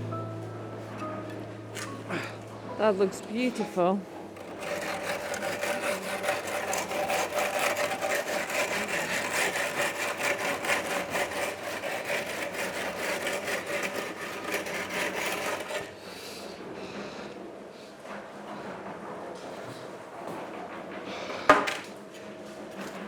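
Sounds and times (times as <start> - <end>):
scraping concrete floor: 3.4 - 15.9.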